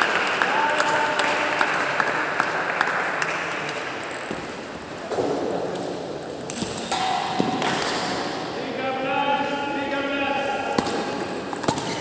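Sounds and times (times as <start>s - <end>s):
spectators applauding: 0.0s - 4.1s.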